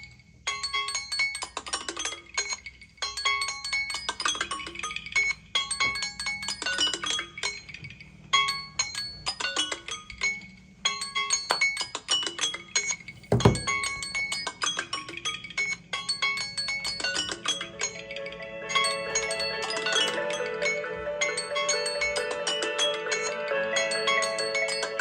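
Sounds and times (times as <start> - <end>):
low thump: 13.2 - 14.0.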